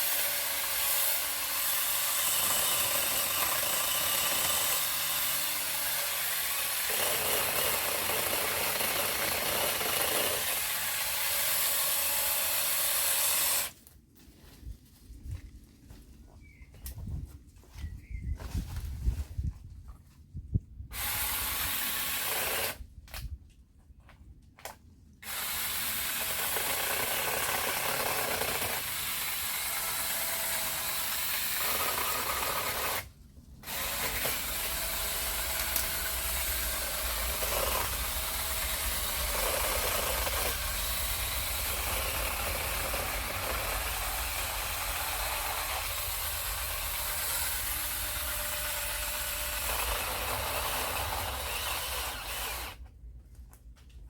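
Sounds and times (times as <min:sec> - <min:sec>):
electric chainsaw running: 0:00.0 - 0:13.8, 0:25.3 - 0:52.8.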